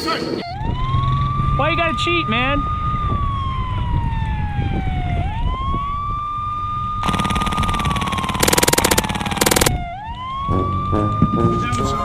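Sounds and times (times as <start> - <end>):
wailing siren: 0.4 - 12.0
loud fast rattle: 7.0 - 9.7.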